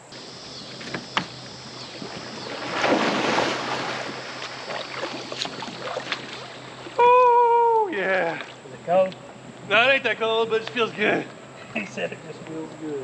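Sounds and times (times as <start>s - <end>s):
water splashing and sloshing: 0.2s - 7.2s, 7.9s - 9.8s.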